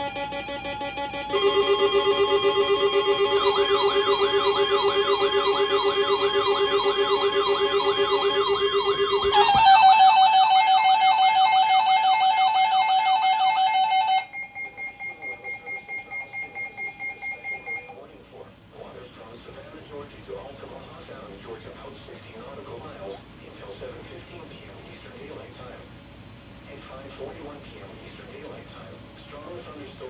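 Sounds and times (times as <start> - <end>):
warbling siren sweep: 0.0 - 14.2
pulsing alert tone: 0.0 - 16.9.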